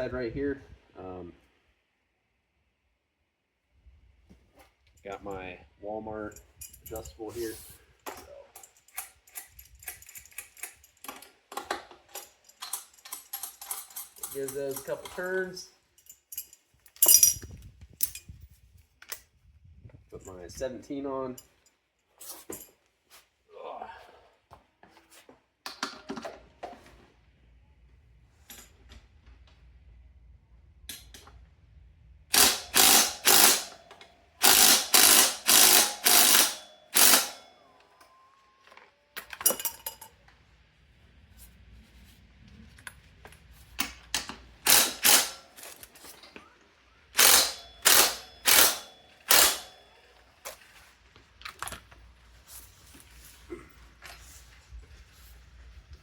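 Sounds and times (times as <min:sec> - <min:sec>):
tool handling: 0:06.3 - 0:18.4, 0:32.3 - 0:37.5, 0:42.7 - 0:54.8
socket ratchet clicking: 0:08.6 - 0:11.2, 0:32.3 - 0:33.8, 0:34.4 - 0:37.4, 0:44.7 - 0:45.5, 0:47.2 - 0:49.7.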